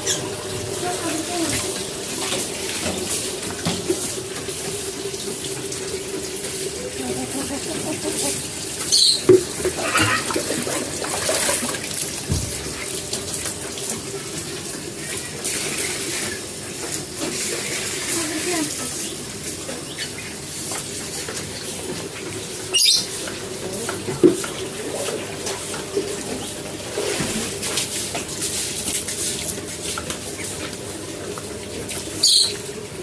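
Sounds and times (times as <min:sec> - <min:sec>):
water running from tap: 0:00.0 - 0:33.0.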